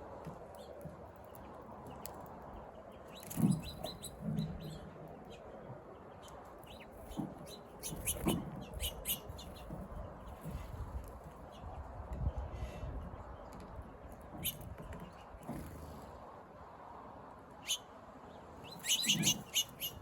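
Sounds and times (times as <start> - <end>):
birds chirping: 1.3 - 15.6, 18.6 - 20.0.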